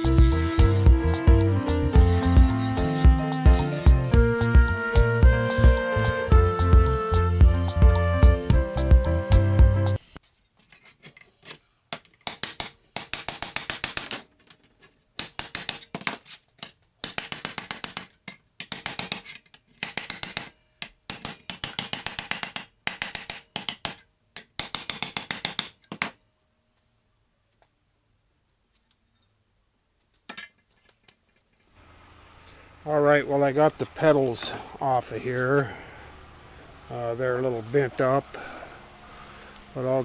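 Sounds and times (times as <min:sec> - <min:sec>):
rapid metal clicking of hand tool: 0:12.0 - 0:14.6, 0:15.2 - 0:26.1.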